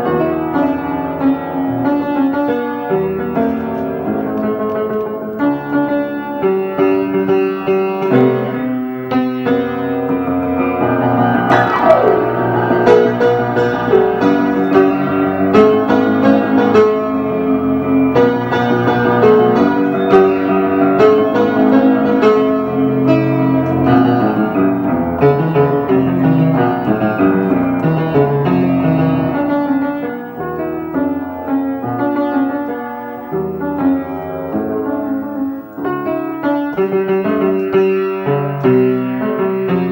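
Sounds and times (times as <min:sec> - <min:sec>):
piano music: 0:08.0 - 0:39.9.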